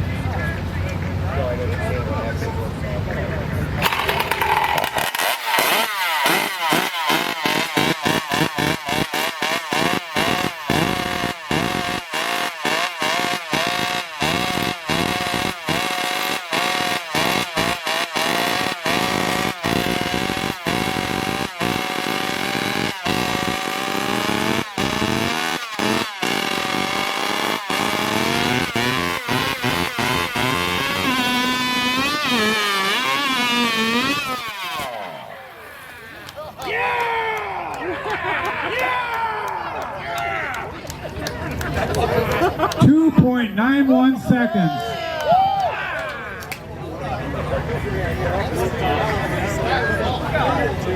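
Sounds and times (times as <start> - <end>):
chainsaw engine at high revs: 3.8 - 36.6.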